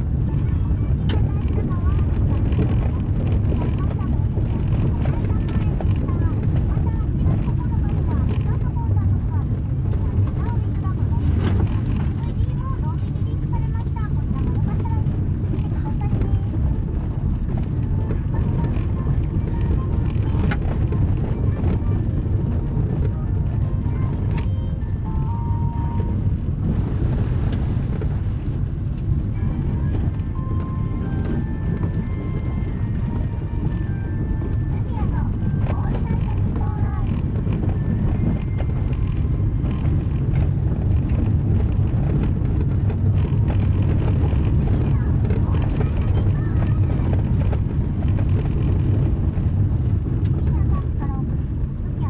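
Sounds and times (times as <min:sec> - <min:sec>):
car tyres on gravel road: 0:00.0 - 0:52.0
car radio music: 0:12.1 - 0:41.1.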